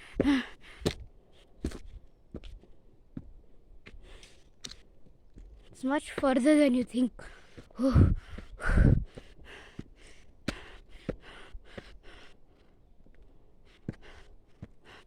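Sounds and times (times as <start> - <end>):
person panting: 0.0 - 1.0, 7.2 - 15.0.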